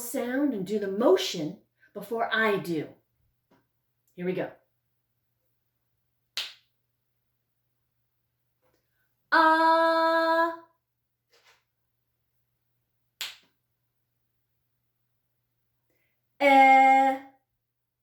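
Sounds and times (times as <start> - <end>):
finger snap: 6.3 - 6.7, 13.2 - 13.6
woman holding a vowel: 9.3 - 10.7, 16.4 - 17.4.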